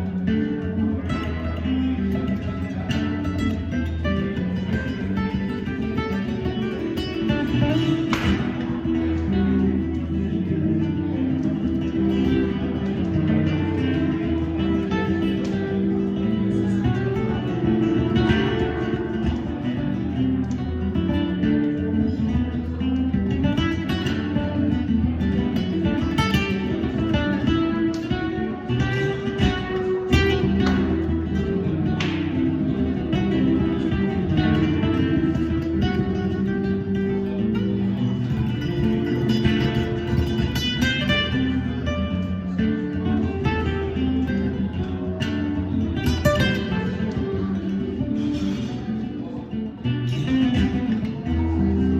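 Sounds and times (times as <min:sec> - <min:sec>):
plucked guitar music: 0:00.0 - 0:51.9.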